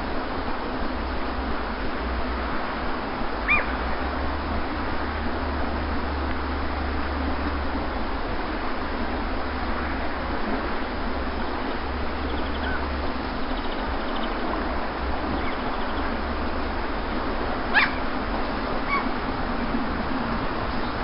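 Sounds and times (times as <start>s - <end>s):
sea surf washing on beach: 0.0s - 21.0s
faint high bird chirps: 12.2s - 14.4s, 15.3s - 16.1s.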